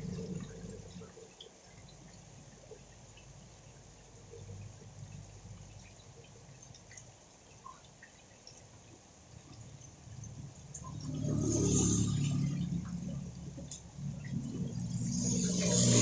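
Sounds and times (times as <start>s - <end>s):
low steady rumble: 0.0s - 1.1s, 1.8s - 6.9s, 9.3s - 16.0s
faint rain: 0.0s - 16.0s
water drips: 0.0s - 16.0s.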